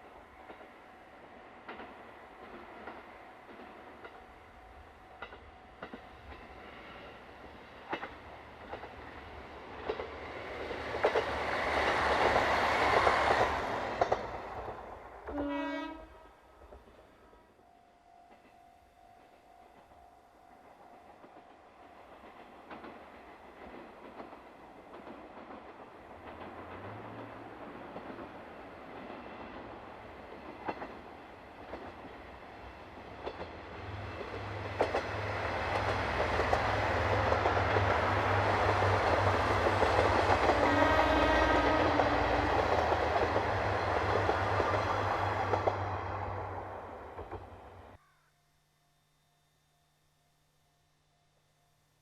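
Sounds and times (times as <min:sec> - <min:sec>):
wheels clacking over rail joints: 0:01.6 - 0:04.3, 0:05.1 - 0:15.4, 0:22.2 - 0:48.0
train horn blast: 0:15.3 - 0:16.5, 0:40.2 - 0:42.9
diesel railcar engine rumble: 0:25.0 - 0:48.0.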